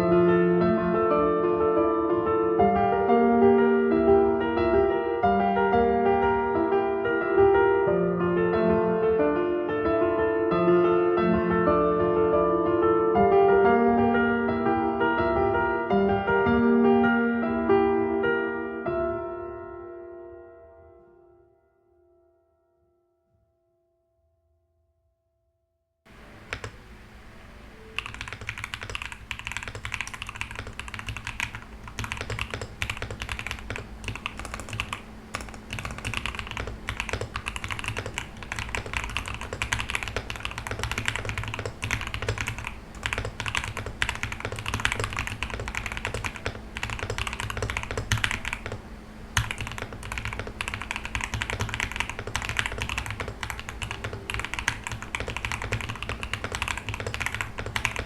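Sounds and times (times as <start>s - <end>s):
faint low hum: 26.1s - 58.0s
mechanical keyboard typing: 26.5s - 26.8s, 28.0s - 48.8s, 49.4s - 58.0s.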